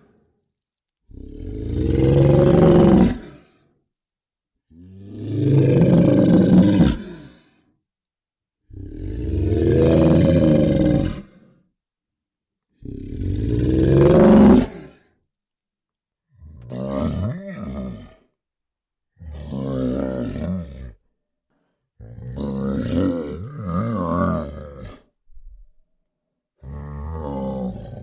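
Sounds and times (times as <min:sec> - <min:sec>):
monster roars: 0:01.2 - 0:03.4, 0:05.1 - 0:07.1, 0:08.8 - 0:11.4, 0:13.0 - 0:15.0, 0:26.7 - 0:28.0.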